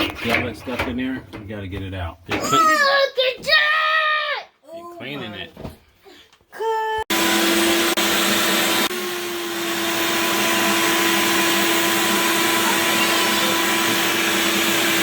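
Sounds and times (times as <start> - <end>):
vacuum cleaner humming: 7.1 - 15.0.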